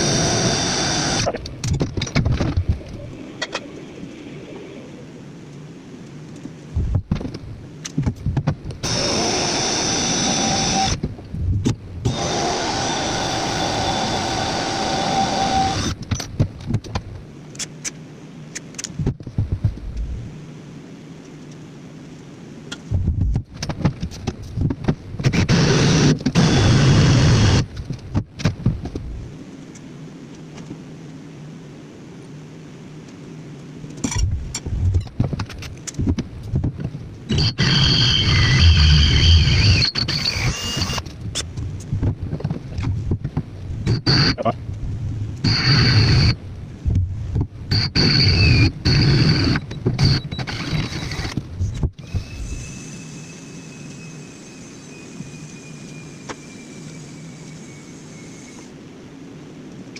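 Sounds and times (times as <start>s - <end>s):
power tool whining: 0.0s - 1.3s, 8.8s - 11.0s, 12.0s - 16.0s, 25.3s - 27.7s, 37.3s - 41.0s, 45.4s - 46.4s, 47.7s - 51.4s, 52.0s - 58.7s.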